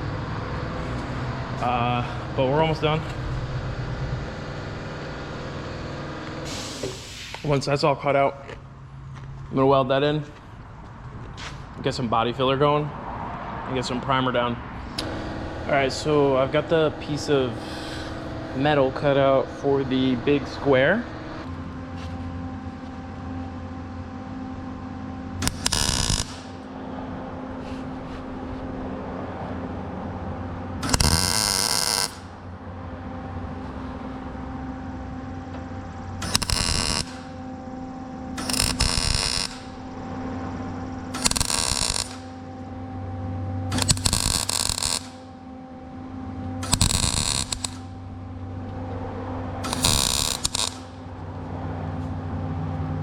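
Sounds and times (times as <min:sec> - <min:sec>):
welder hum: 0:00.0 - 0:07.8, 0:14.8 - 0:29.0, 0:30.7 - 0:32.5, 0:33.5 - 0:51.5
welding crackling bursts: 0:25.4 - 0:26.6, 0:30.8 - 0:32.2, 0:36.2 - 0:37.4, 0:38.4 - 0:39.9, 0:41.1 - 0:42.3, 0:43.7 - 0:45.3, 0:46.6 - 0:47.9, 0:49.6 - 0:51.0.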